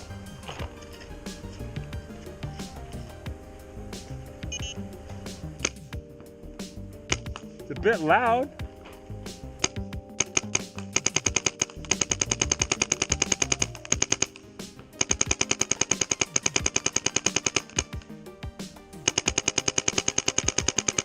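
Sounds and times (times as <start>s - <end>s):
paintball marker firing rapidly: 9.6s - 14.4s, 15.0s - 18.0s, 19.1s - 21.0s.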